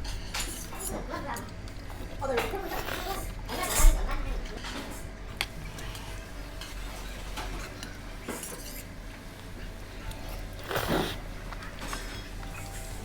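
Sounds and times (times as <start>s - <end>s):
cutlery clinking on a dish: 0.0s - 1.5s, 6.6s - 8.9s.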